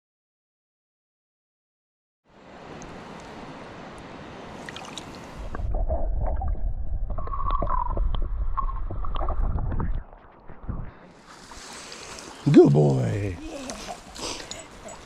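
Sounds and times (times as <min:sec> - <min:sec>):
rushing river water: 0:02.3 - 0:05.5, 0:11.1 - 0:15.0.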